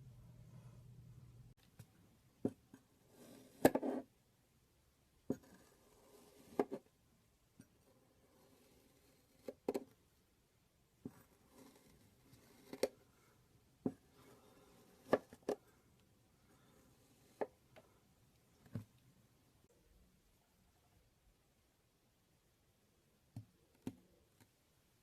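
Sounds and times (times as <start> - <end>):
blade cutting kinetic sand: 11.1 - 12.9.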